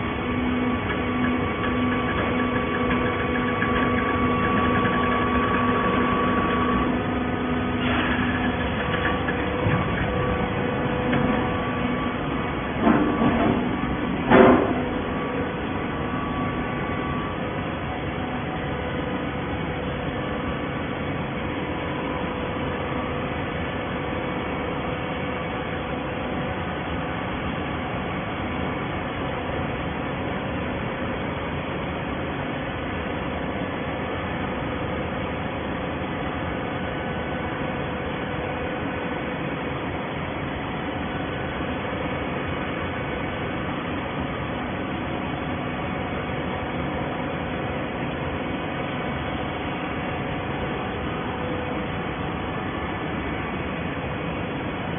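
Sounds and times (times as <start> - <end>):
baling machinery humming: 0.0 - 30.7.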